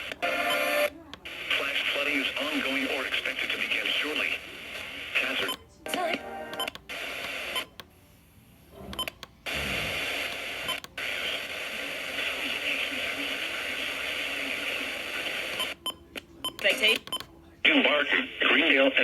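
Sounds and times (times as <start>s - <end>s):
radio crackle and clicks: 0.0s - 7.9s, 8.8s - 19.0s
static hiss: 9.5s - 15.7s.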